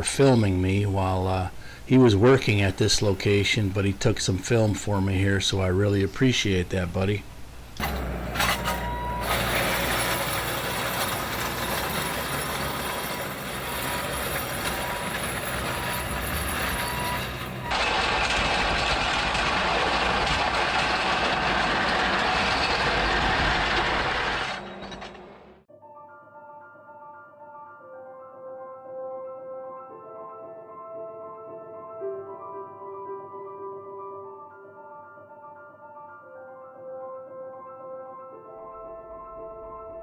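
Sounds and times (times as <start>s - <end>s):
diesel engine working: 7.8s - 25.6s.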